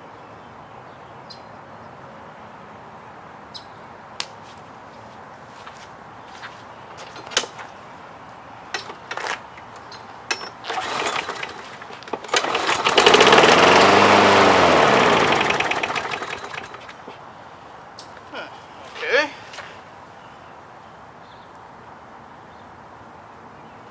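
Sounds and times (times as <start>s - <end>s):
pull-start knocks: 10.3s - 17.0s
lawn mower engine running: 10.3s - 17.2s.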